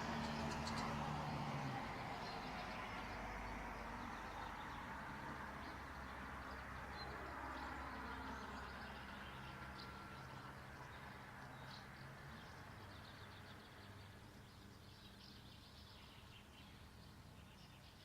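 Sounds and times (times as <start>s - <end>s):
low engine hum: 0.0s - 11.3s.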